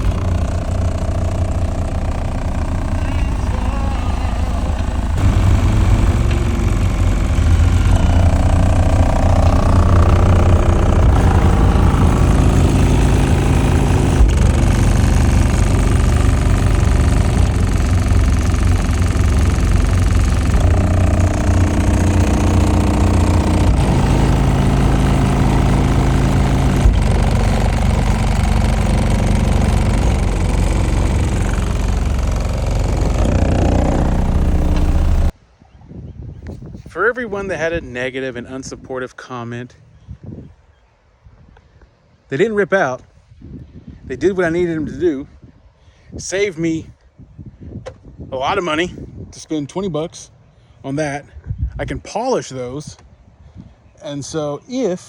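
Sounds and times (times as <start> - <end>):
bass-heavy music through subwoofer: 0.0 - 31.3.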